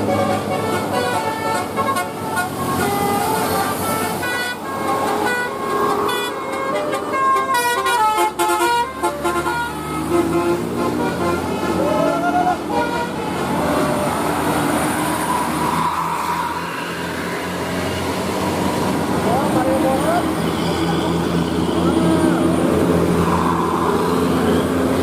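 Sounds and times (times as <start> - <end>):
bus horn playing melodic tune: 0.0 - 13.6.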